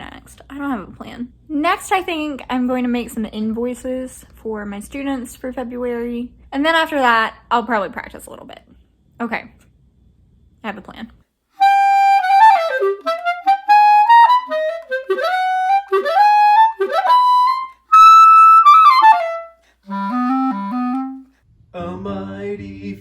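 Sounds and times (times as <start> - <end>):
solo clarinet: 11.6 - 21.4.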